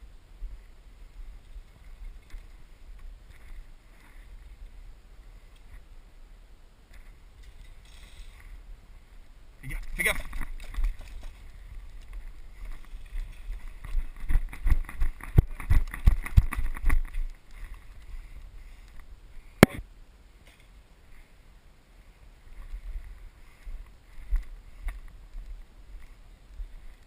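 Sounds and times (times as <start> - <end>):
gear rustling against camera: 6.9 - 19.5.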